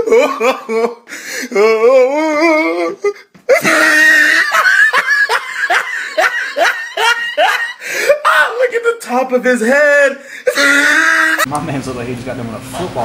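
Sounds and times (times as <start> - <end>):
person laughing loudly: 0.0 - 8.6, 10.4 - 11.5.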